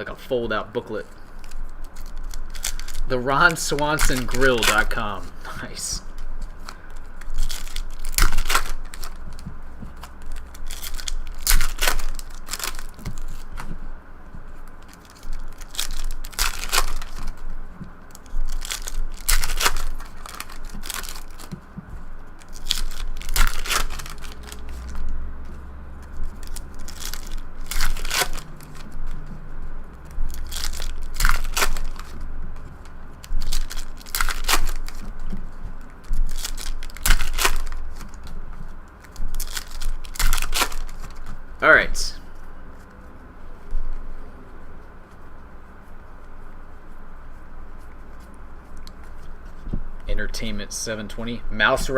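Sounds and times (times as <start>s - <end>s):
cards being handled: 0.5s - 41.4s, 42.0s - 50.1s
card pack wrappers tearing and crinkling: 1.0s - 13.8s, 14.6s - 41.4s.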